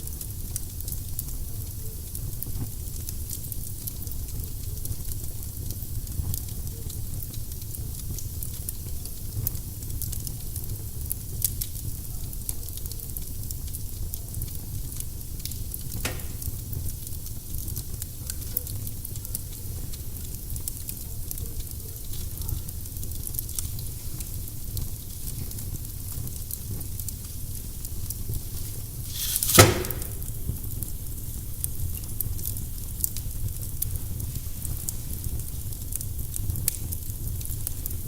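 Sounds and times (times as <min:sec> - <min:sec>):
low rumble of flame: 0:00.0 - 0:29.2, 0:29.9 - 0:38.0
loud fire pops: 0:13.4 - 0:18.3, 0:26.8 - 0:31.2
firewood crackling and snapping: 0:14.4 - 0:18.1, 0:28.0 - 0:30.4.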